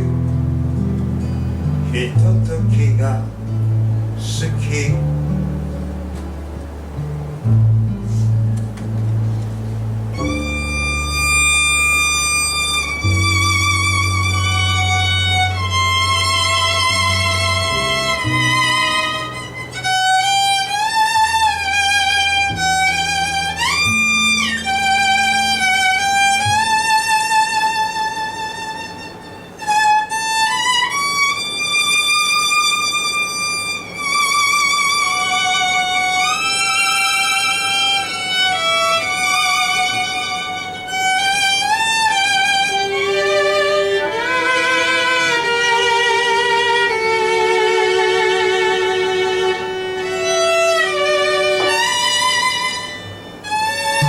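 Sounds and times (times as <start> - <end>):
low accompaniment notes: 0.0 - 54.0
lower melodic line: 0.0 - 54.0
melody instrument with vibrato: 9.3 - 27.0.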